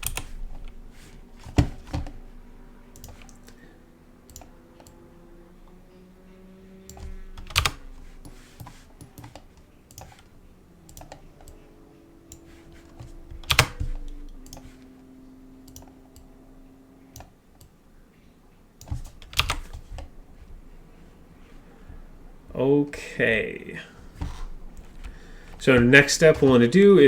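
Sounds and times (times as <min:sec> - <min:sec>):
keyboard key presses: 0:00.0 - 0:00.8, 0:06.9 - 0:10.3, 0:12.3 - 0:14.9, 0:18.8 - 0:20.1
faint low hum with tones: 0:00.0 - 0:27.0.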